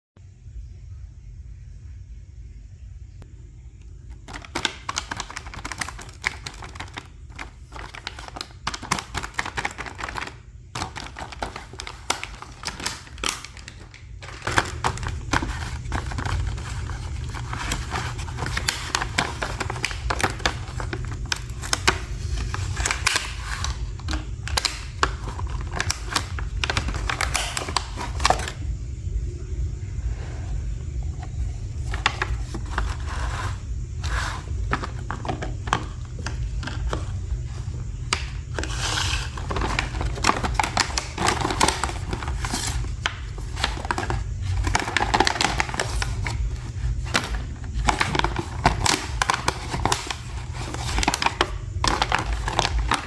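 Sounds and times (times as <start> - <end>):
low hum: 28.2 - 40.1.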